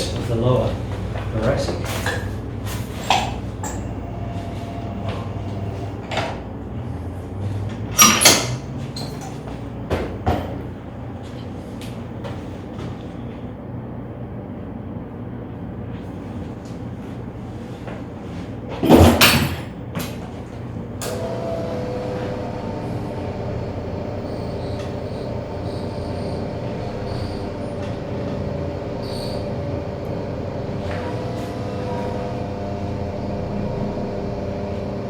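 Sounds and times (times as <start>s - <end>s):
massage tool motor whining: 3.0s - 9.3s, 21.0s - 35.0s.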